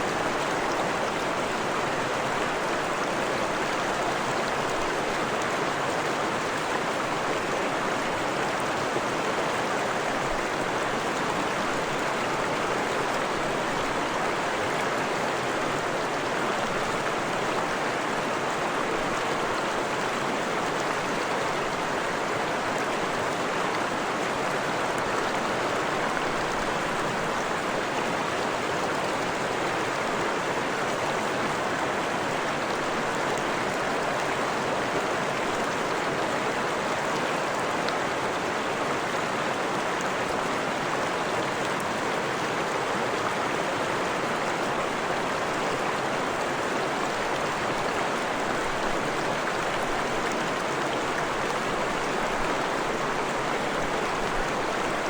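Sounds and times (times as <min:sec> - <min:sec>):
stream flowing: 0:00.0 - 0:55.0.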